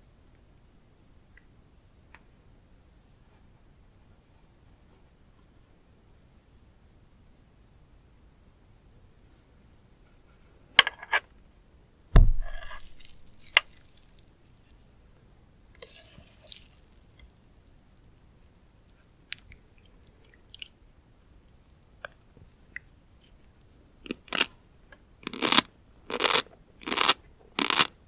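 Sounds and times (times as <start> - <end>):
heavy low thump: 12.2 - 12.8
chewing with small crackles: 12.6 - 28.0.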